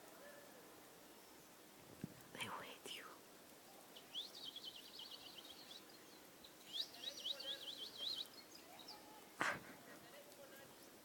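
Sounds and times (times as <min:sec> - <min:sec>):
small bird chirping: 0:03.6 - 0:09.2.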